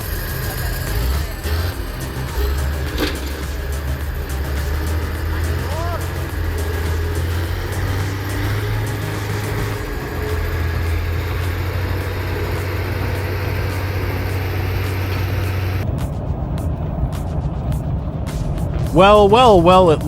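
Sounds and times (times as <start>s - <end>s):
scattered clicks: 0.0s - 15.9s
heavy vehicle engine droning: 0.0s - 20.0s
rough engine noise: 0.0s - 20.0s.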